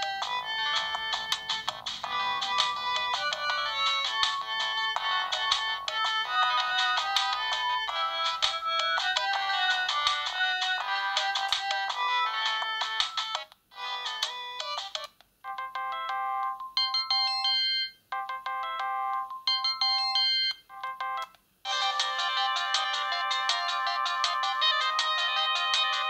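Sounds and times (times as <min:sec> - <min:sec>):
polyphonic phone ringtone melodies: 0:00.0 - 0:26.0.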